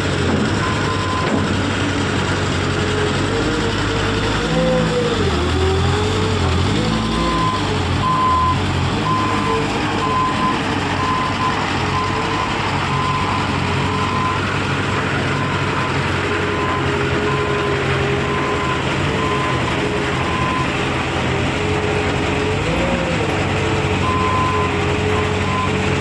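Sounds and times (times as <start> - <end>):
diesel engine running: 0.0 - 26.0
reversing alarm beeping: 0.6 - 1.4, 6.8 - 14.4, 18.2 - 20.7.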